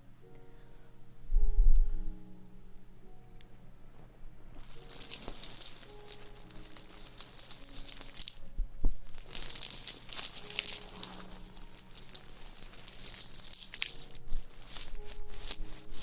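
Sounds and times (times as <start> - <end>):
crackly rustling: 3.4 - 16.0.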